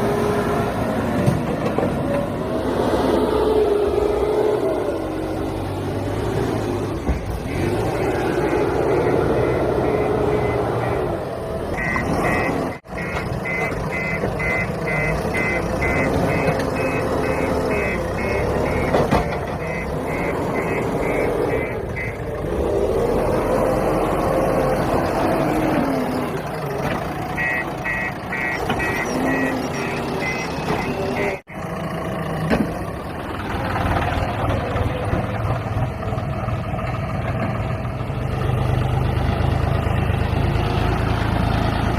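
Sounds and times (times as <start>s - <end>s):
diesel engine running under load: 0.0s - 41.9s
reversing alarm beeping: 6.7s - 22.7s, 27.3s - 31.7s.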